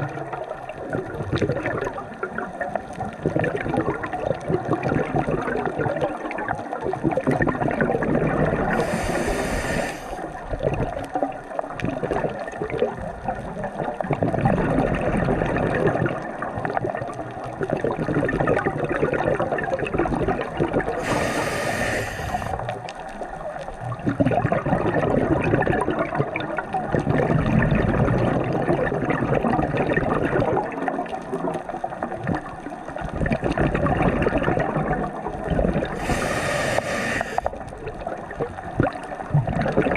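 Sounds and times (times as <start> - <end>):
water sloshing and gurgling: 0.0 - 39.9
brief hissing rush: 8.8 - 10.2, 21.0 - 22.6, 36.0 - 37.5.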